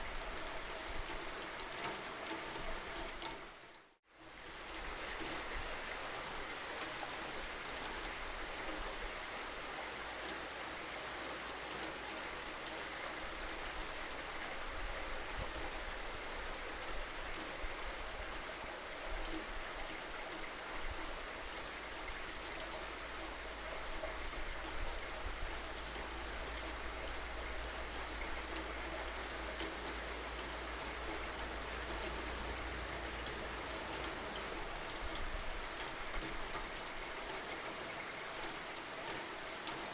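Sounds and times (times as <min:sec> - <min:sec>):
raindrops pattering: 0:21.4 - 0:39.9.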